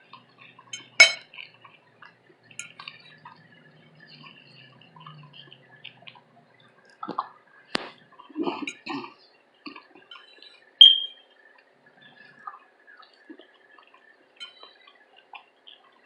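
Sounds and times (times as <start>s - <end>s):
bright clink: 0.8s - 1.2s.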